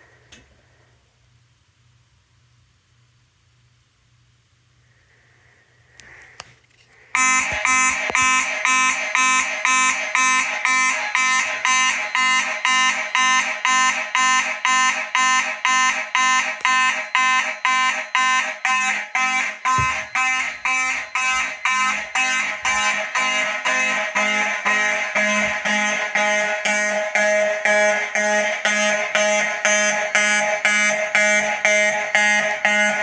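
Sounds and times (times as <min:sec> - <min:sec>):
fire alarm horns pulsing: 0:07.2 - 0:33.0.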